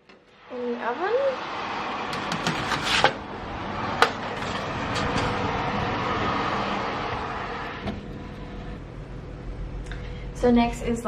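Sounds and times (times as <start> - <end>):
low rumbling hum: 0.3 - 11.0
pans clattering and clicking: 2.2 - 3.2.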